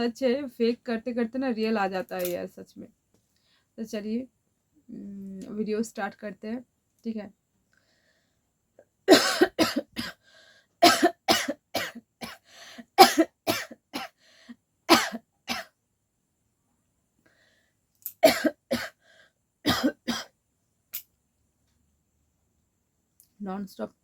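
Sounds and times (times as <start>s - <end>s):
woman coughing: 9.1s - 10.2s, 10.8s - 12.4s, 13.0s - 14.2s, 14.9s - 15.7s, 18.2s - 19.0s, 19.7s - 20.3s.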